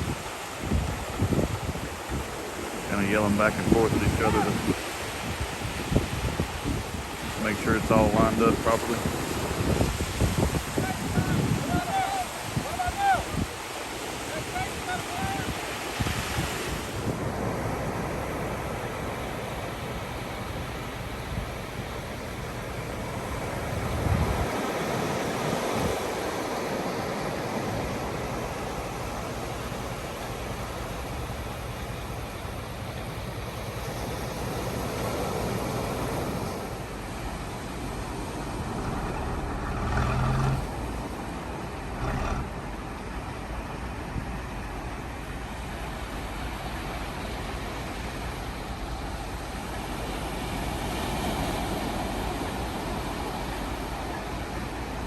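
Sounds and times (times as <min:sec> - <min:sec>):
wind gust on microphone: 0:00.0 - 0:19.2, 0:23.0 - 0:29.9
surf: 0:00.0 - 0:55.0
wave washing in: 0:00.0 - 0:55.0
wind: 0:00.0 - 0:55.0
machinery engine rumbling: 0:36.7 - 0:44.0.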